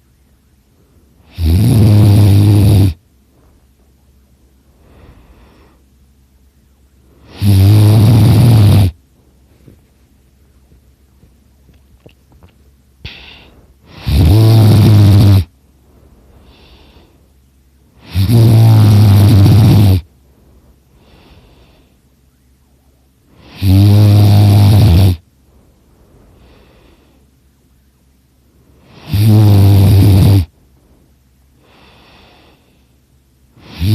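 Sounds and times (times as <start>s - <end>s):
person snoring: 1.2s - 3.0s, 7.2s - 9.0s, 13.0s - 15.5s, 18.0s - 20.1s, 23.4s - 25.2s, 28.8s - 30.5s, 33.6s - 33.9s
soft breath out: 4.7s - 6.0s, 13.0s - 14.0s, 15.8s - 17.4s, 20.3s - 22.1s, 25.4s - 27.4s.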